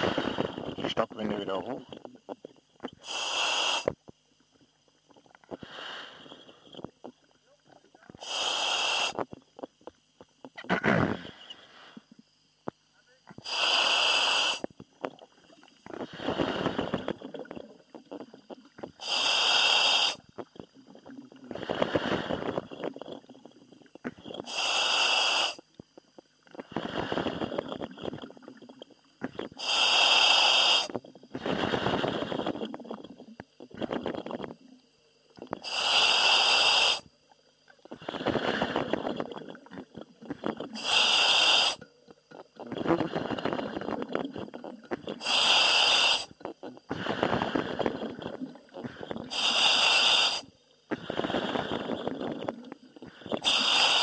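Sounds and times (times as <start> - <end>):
diver breathing in helmet: 0.0 - 0.8, 3.0 - 3.9, 5.5 - 6.8, 8.2 - 9.2, 11.0 - 12.2, 13.4 - 14.7, 15.9 - 17.4, 18.9 - 20.2, 21.4 - 22.9, 24.4 - 25.6, 26.6 - 28.2, 29.5 - 32.8, 35.6 - 37.1, 37.9 - 39.3, 39.9 - 41.9, 42.8 - 54.0.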